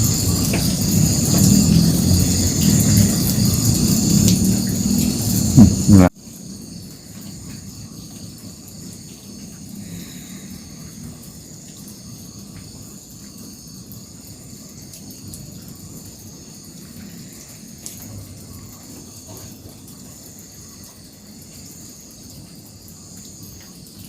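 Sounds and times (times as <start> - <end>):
loud rumbling: 0.0 - 6.1
crickets chirring: 0.0 - 24.0.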